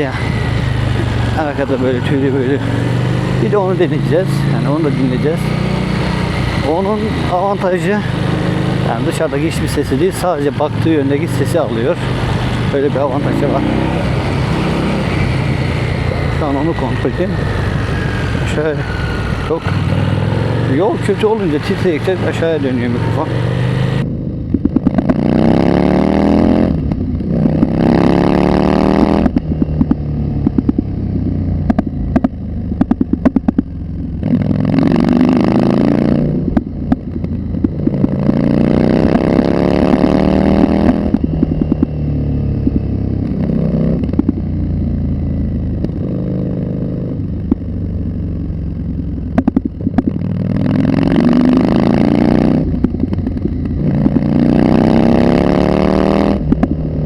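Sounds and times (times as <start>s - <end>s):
sharp clicks and knocks: 24.5s - 25.2s, 29.2s - 30.9s, 31.6s - 34.4s, 36.5s - 38.4s, 40.8s - 42.0s, 44.0s - 44.4s, 49.3s - 50.3s, 56.4s - 56.8s
car engine accelerating hard: 53.8s - 56.5s.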